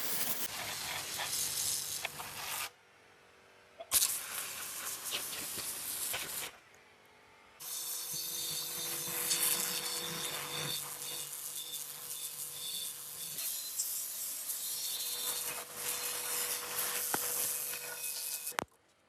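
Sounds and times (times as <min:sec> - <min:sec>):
spray-like hissing: 0:04.0 - 0:06.5.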